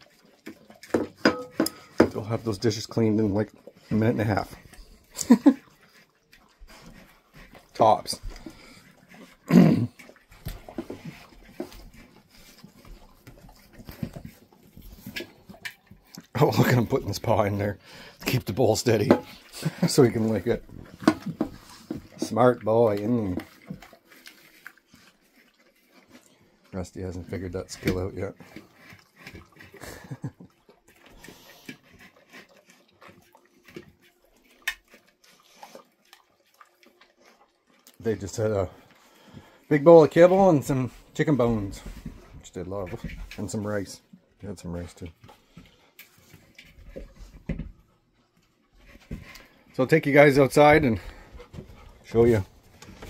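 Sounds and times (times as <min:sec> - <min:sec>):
dogs licking and lapping: 0:00.0 - 0:53.0
dishes scraping: 0:00.8 - 0:02.2, 0:19.0 - 0:22.4.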